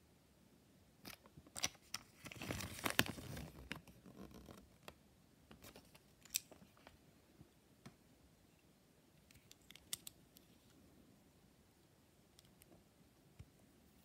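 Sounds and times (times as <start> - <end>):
wrapper crinkling and tearing: 1.6 - 4.0.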